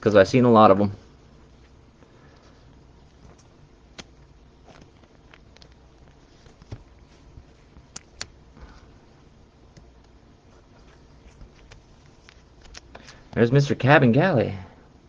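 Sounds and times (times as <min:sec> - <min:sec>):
trading cards rustling: 0:01.6 - 0:09.0, 0:09.7 - 0:13.4.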